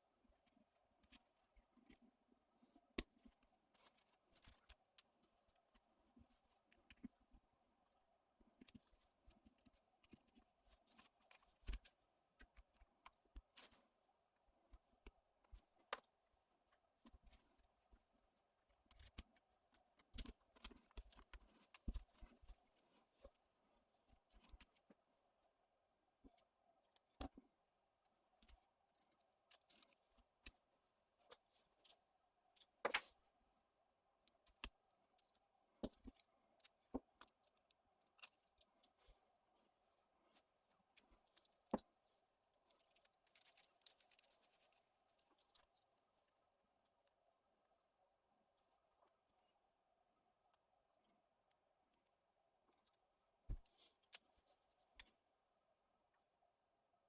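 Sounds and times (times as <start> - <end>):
faint steady hum: 0.0 - 57.0
small parts and tools clicking: 42.6 - 45.7.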